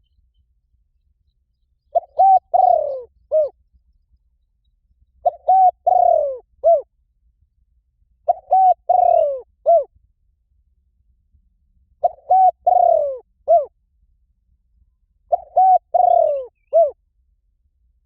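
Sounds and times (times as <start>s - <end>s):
dove cooing: 1.9s - 3.6s, 5.2s - 6.9s, 8.3s - 9.9s, 12.0s - 13.7s, 15.3s - 17.0s.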